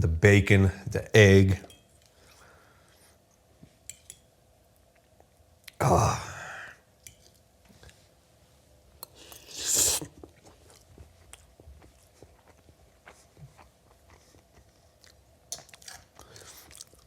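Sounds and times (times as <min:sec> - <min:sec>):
person slurping noodles: 0:09.1 - 0:10.2
soft chewing clicks: 0:10.2 - 0:17.0.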